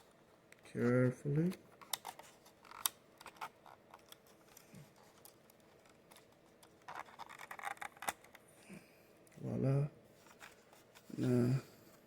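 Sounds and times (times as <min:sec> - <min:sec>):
rustling and scraping: 0:01.8 - 0:08.4, 0:10.1 - 0:12.0.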